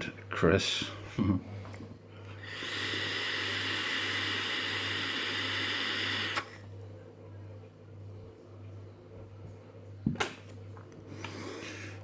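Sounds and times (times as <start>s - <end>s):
low electrical hum: 0.0s - 12.0s
steady hiss: 2.4s - 6.6s.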